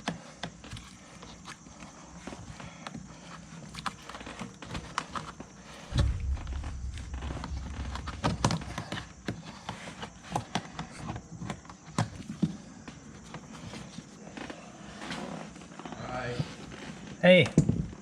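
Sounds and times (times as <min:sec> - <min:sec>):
low rumbling thump: 0:05.9 - 0:09.4.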